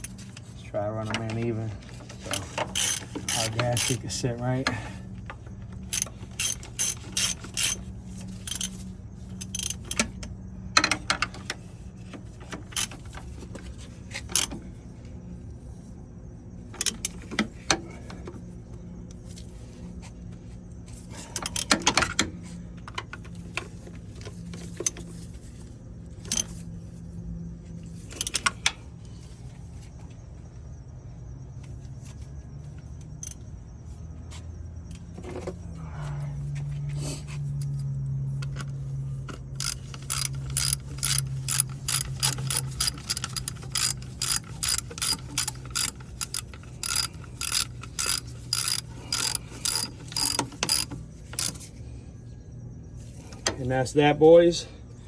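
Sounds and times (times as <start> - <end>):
socket ratchet clicking: 5.4 - 7.8, 39.3 - 51.7.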